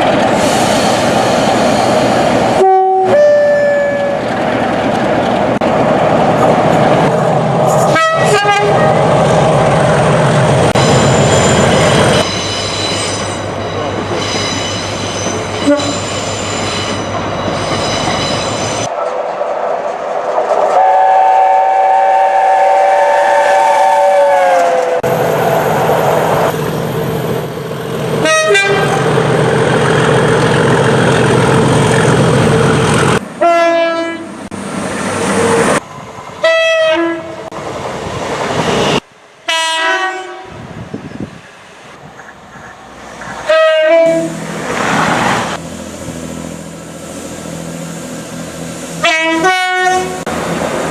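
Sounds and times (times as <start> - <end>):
train running noise: 0.0 - 50.9
train horns: 2.6 - 4.2, 7.9 - 9.0, 15.6 - 16.0, 20.8 - 25.5, 28.2 - 29.1, 33.4 - 34.3, 36.4 - 37.4, 39.4 - 40.6, 43.4 - 45.6, 49.0 - 50.3.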